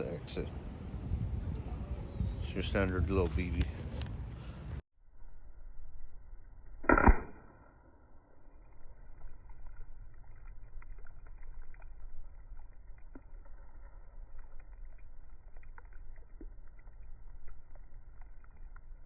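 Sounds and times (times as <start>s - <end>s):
air rifle shot: 6.8s - 7.7s.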